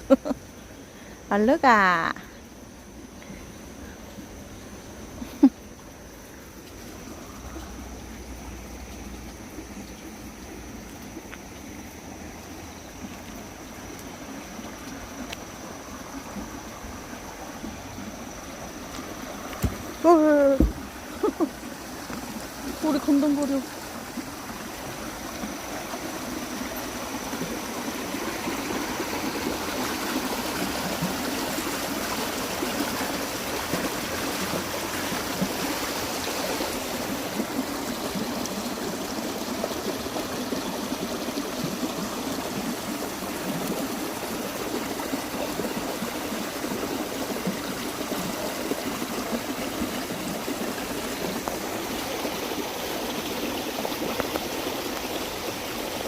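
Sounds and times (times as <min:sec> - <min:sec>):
water rushing and trickling: 0:00.0 - 0:56.0.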